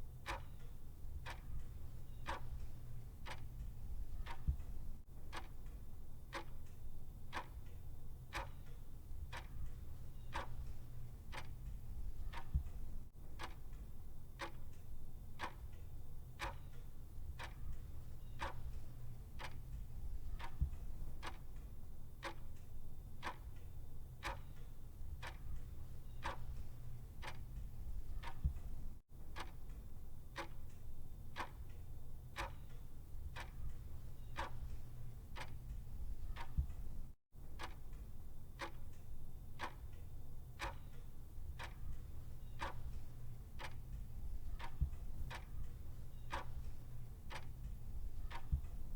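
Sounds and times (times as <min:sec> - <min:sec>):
clock ticking: 0:00.0 - 0:48.9.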